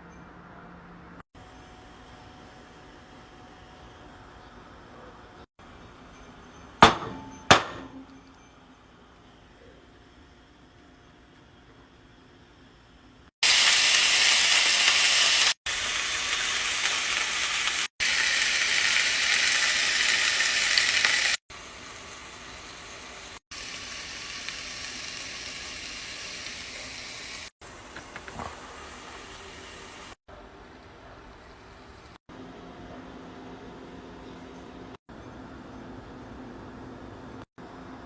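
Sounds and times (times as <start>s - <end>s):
food sizzling in a hot pan: 13.4s - 30.2s.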